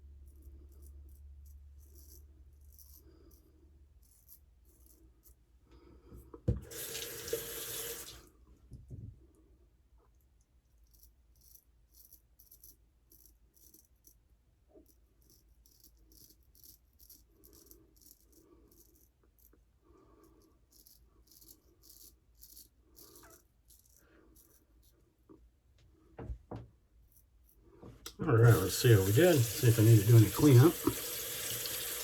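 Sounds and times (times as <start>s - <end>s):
razor scraping stubble: 10.8s - 19.6s, 20.2s - 25.0s, 27.0s - 32.0s.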